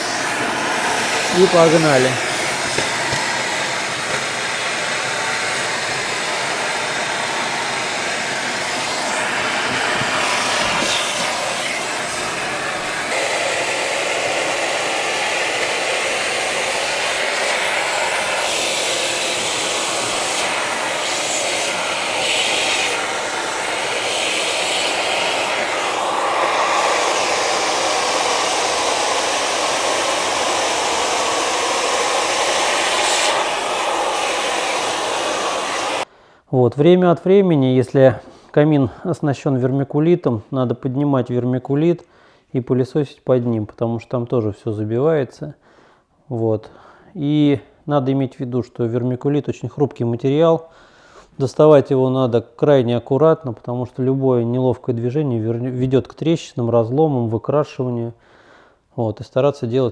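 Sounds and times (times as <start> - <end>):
vacuum cleaner sucking up ash: 0.0 - 36.1.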